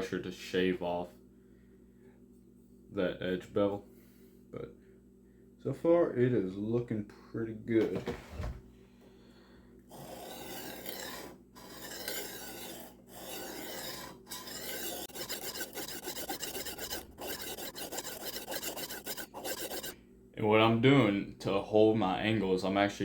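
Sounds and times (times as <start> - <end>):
knife scraping on sharpening stone: 9.9 - 20.0.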